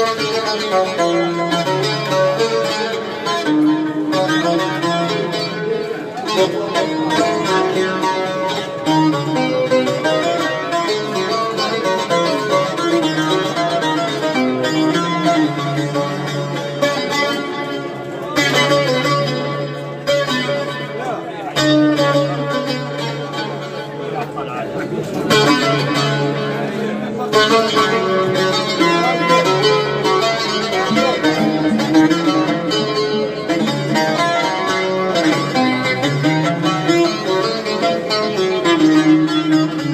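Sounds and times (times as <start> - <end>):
plucked string instrumental music: 0.0 - 39.9.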